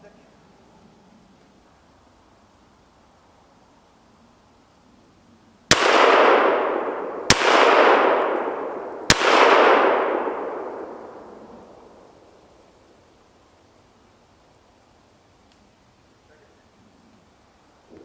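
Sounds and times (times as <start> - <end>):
rifle shots with echo: 5.7 - 12.2.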